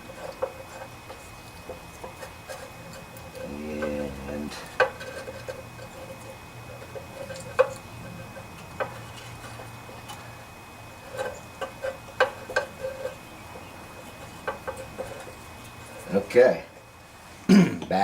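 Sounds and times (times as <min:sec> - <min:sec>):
metal engine parts clicking: 0:00.0 - 0:10.3.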